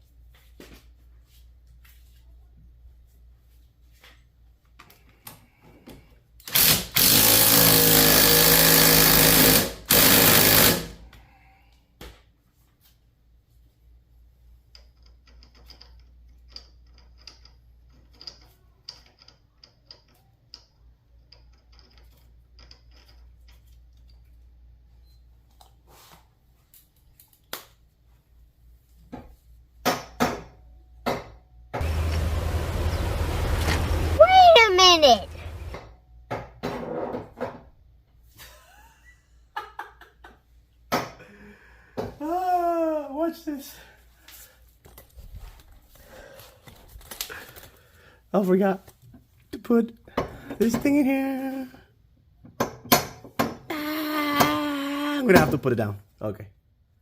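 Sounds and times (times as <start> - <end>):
handheld power tool running: 6.5 - 11.0.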